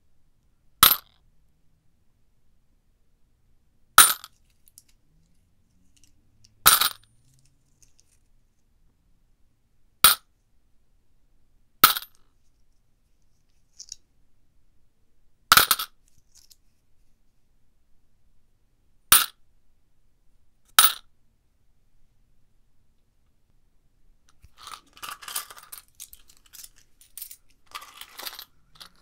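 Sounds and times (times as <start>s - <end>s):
coins clinking: 6.7s - 8.1s, 24.4s - 29.0s.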